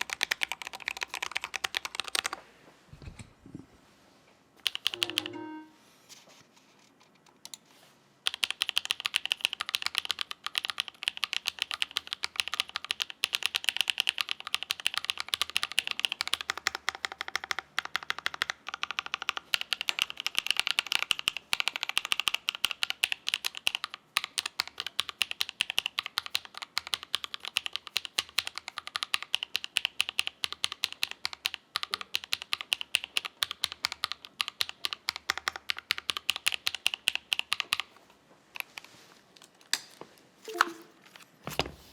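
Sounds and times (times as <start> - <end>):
fast typing on keyboard: 0.0 - 2.4, 4.6 - 5.5, 8.2 - 37.9.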